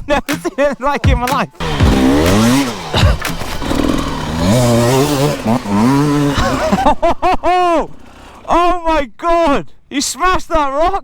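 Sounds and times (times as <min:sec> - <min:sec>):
dirt bike engine revving: 0:01.1 - 0:08.8.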